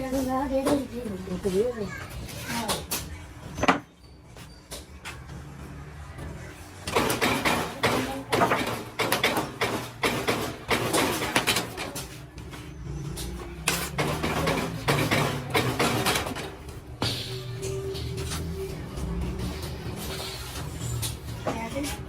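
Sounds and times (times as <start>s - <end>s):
rapid clatter of knocks and impacts: 6.2s - 12.3s, 13.2s - 17.1s.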